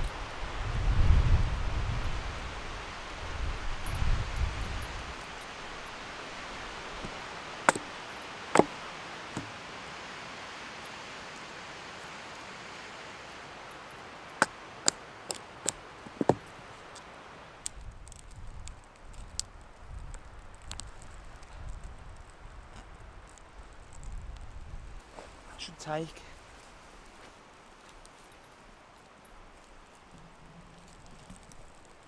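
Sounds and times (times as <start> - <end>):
wood fire crackling and popping: 4.8 - 9.7, 13.9 - 25.6, 26.4 - 32.0.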